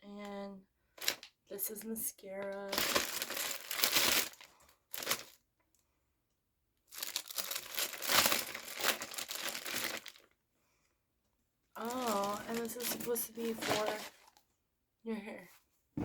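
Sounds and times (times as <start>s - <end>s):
packaging crinkling and tearing: 1.0s - 1.3s, 2.7s - 5.4s, 6.9s - 10.3s, 11.8s - 14.4s.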